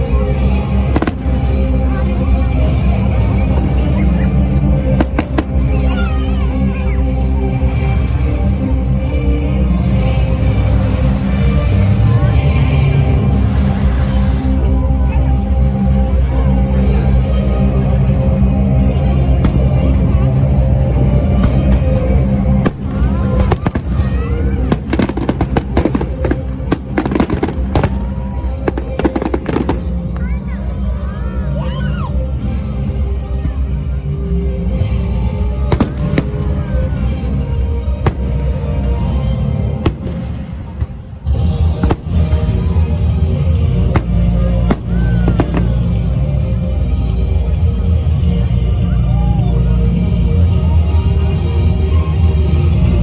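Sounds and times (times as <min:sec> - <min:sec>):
fireworks bangs and crackles: 0:00.0 - 0:06.6, 0:09.6 - 0:31.0, 0:34.6 - 0:47.9
background music: 0:00.0 - 0:53.0
fireworks bangs: 0:22.5 - 0:30.3, 0:39.8 - 0:46.2.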